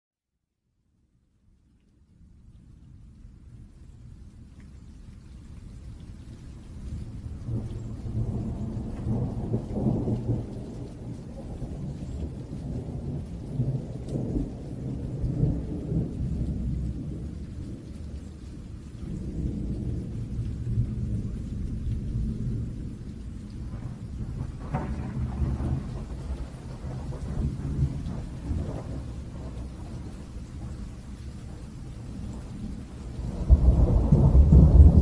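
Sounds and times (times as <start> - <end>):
rain hissing: 1.6 - 35.0
thunder rolling: 7.4 - 17.8, 19.1 - 35.0.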